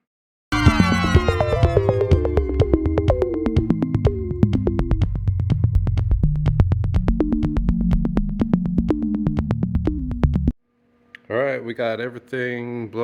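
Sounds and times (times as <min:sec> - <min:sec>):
electronic music with synth bass: 0:00.5 - 0:10.5.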